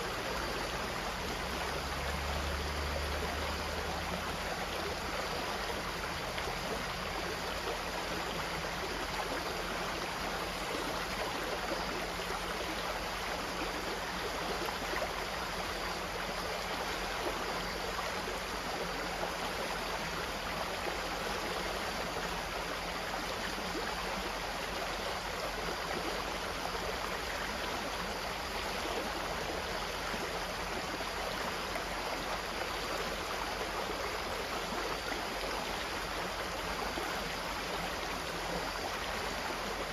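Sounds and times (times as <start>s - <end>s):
water flowing steadily: 0.0s - 39.9s.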